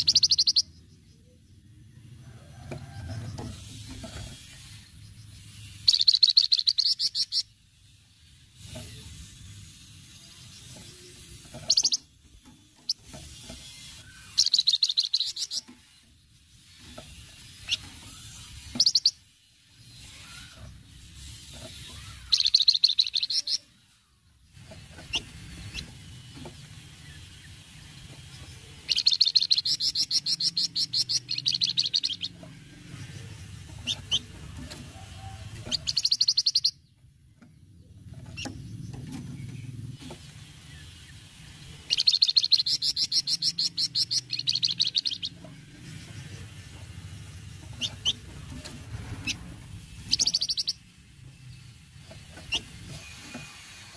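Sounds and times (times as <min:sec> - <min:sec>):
songbird rattling chatter: 0:00.0 - 0:00.6, 0:03.6 - 0:23.7, 0:24.5 - 0:36.8, 0:38.0 - 0:53.9.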